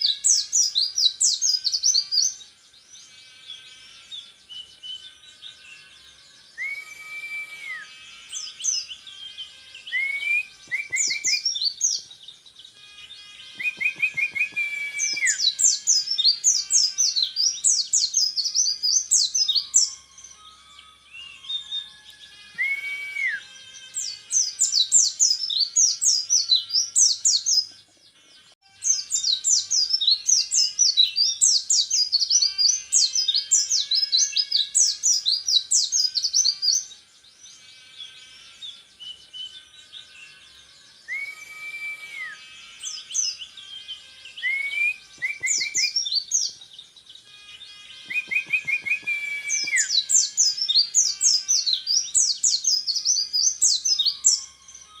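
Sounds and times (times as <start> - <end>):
low drawn-out bird whistles: 6.6 - 8.0, 9.9 - 11.8, 13.6 - 16.9, 22.6 - 23.5, 41.1 - 42.5, 44.4 - 46.3, 48.1 - 50.2.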